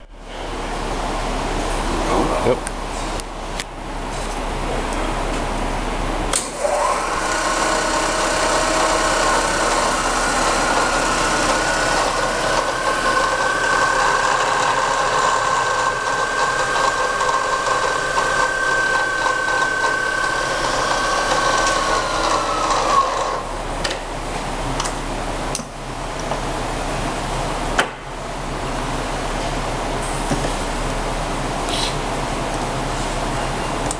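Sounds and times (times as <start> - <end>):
machine motor whine: 6.3 - 23.8.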